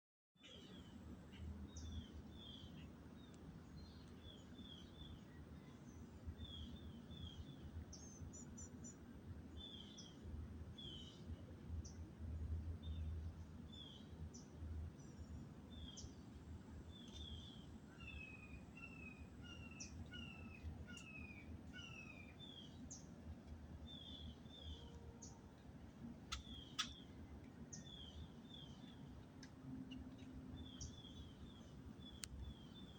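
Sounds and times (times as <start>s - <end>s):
birds chirping: 13.7s - 23.2s, 23.8s - 25.6s, 26.2s - 32.9s.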